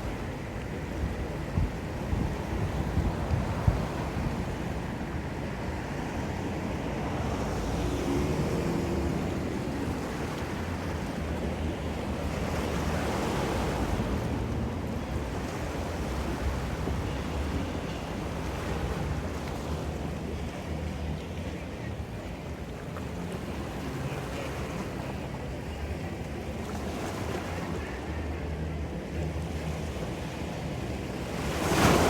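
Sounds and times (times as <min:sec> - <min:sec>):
wind rumble on microphone: 0:00.0 - 0:26.6
ocean surf washing in: 0:31.1 - 0:32.0.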